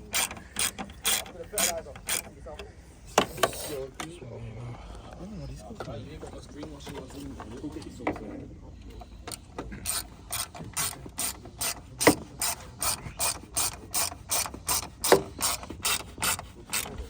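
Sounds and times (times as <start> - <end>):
hand ratchet clicking: 0.0 - 2.3, 9.3 - 17.0.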